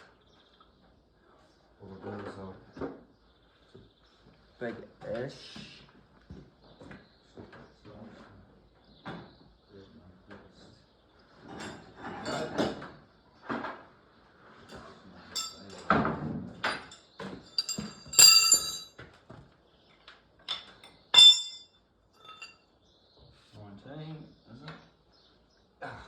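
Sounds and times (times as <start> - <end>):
hand tools knocking on steel: 15.4 - 15.9, 16.7 - 18.9, 21.2 - 21.6, 22.2 - 22.5.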